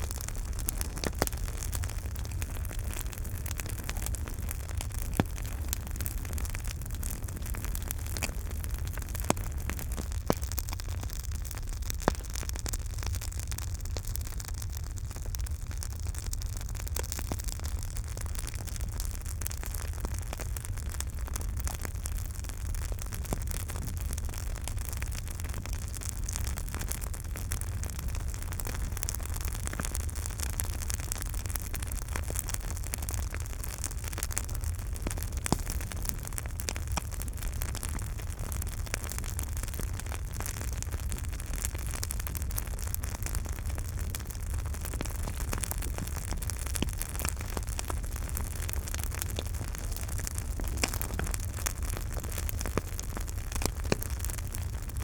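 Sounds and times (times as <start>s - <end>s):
campfire hiss and rumble: 0.0s - 55.0s
fire crackles and pops: 0.0s - 55.0s.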